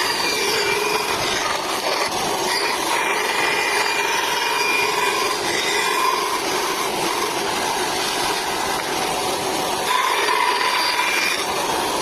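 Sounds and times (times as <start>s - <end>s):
bandsaw cutting wood: 0.0s - 12.0s.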